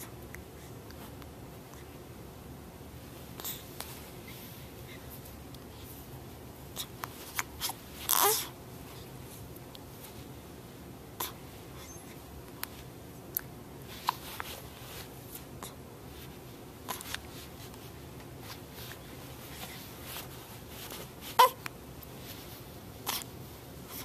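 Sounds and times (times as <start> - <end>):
quiet room hum: 0.0 - 24.0
baby hiccuping: 21.4 - 21.6.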